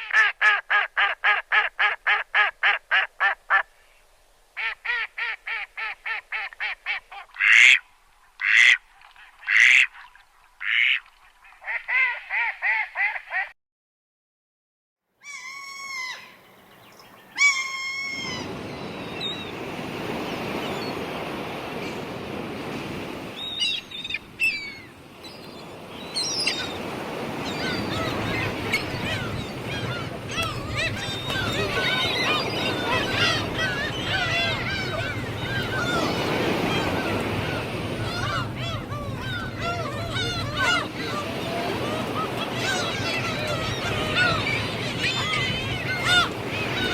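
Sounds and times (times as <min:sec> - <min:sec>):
ducks quacking: 0:08.4 - 0:08.8, 0:09.4 - 0:13.5, 0:26.6 - 0:46.9
birds calling: 0:15.2 - 0:46.9.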